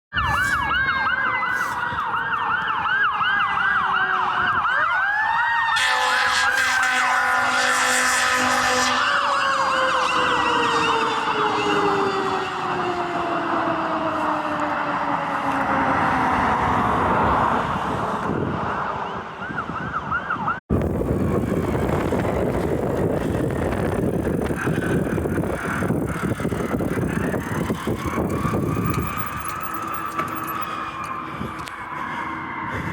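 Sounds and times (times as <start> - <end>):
fast electronic siren yelp: 0.1 - 14.6, 24.6 - 32.9
siren falling in pitch: 0.1 - 16.8
slow siren wail: 0.1 - 32.9
truck engine and road noise: 0.1 - 32.9
air horn blaring: 5.7 - 12.4.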